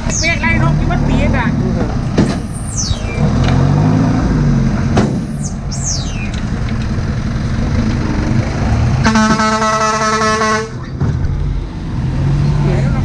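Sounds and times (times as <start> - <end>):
truck engine rumbling: 0.0 - 13.0
truck horn: 9.0 - 10.9.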